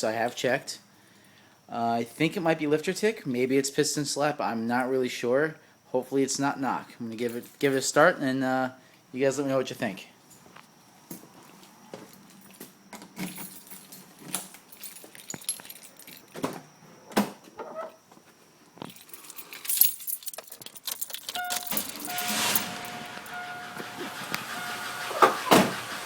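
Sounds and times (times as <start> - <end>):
car keys jangling: 13.2 - 16.4, 18.8 - 25.9
electronic chime: 21.3 - 25.2
car engine starting: 21.3 - 26.0.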